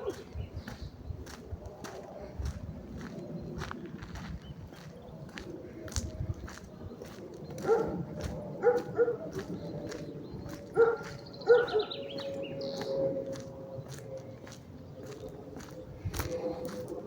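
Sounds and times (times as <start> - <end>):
dog barking: 0.0 - 0.2, 7.6 - 9.4, 10.7 - 12.0.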